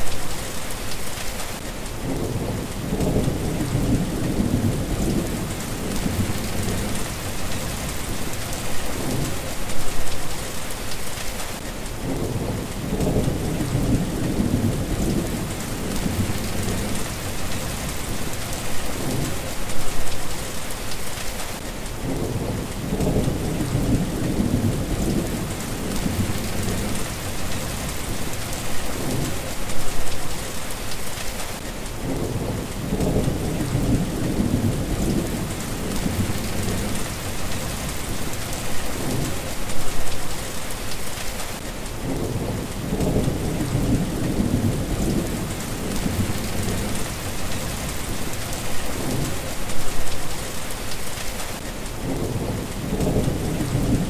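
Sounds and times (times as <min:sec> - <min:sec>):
steady rain falling: 0:00.0 - 0:54.0
low rolling thunder: 0:02.0 - 0:09.5, 0:12.0 - 0:19.5, 0:22.0 - 0:29.9, 0:32.0 - 0:39.9, 0:42.0 - 0:50.2, 0:52.0 - 0:54.0.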